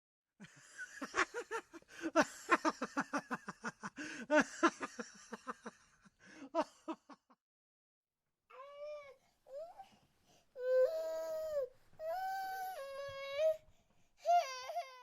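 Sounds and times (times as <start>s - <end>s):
person laughing: 0.6s - 5.8s.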